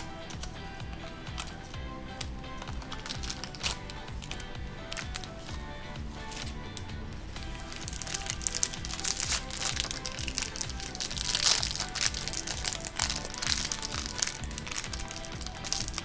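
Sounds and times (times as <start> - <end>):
plastic packaging crinkling: 0.0 - 5.5, 7.4 - 16.0
background music: 0.0 - 16.0.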